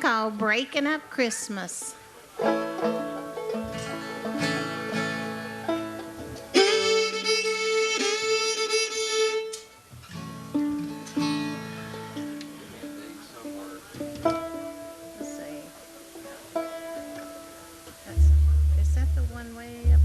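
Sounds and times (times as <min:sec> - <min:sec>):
plucked banjo: 0:01.7 - 0:20.0
guitar notes: 0:01.9 - 0:20.0
fiddle bowing a held note: 0:03.7 - 0:09.8.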